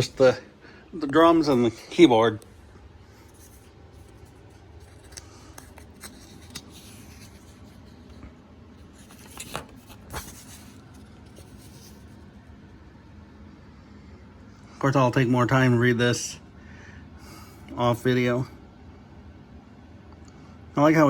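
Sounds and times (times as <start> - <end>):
paper rustling: 3.2 - 8.2, 8.8 - 12.2.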